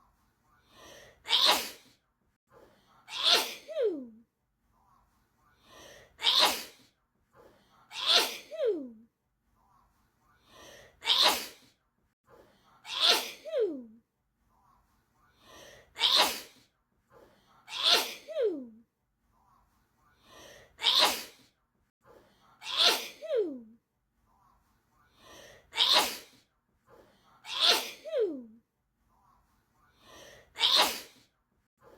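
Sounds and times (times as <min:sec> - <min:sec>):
person sneezing: 0:01.3 - 0:02.0, 0:03.1 - 0:04.0, 0:06.2 - 0:06.9, 0:07.9 - 0:08.8, 0:11.0 - 0:11.7, 0:12.9 - 0:13.7, 0:16.0 - 0:16.6, 0:17.7 - 0:18.5, 0:20.8 - 0:21.4, 0:22.6 - 0:23.6, 0:25.8 - 0:26.4, 0:27.5 - 0:28.4, 0:30.6 - 0:31.3.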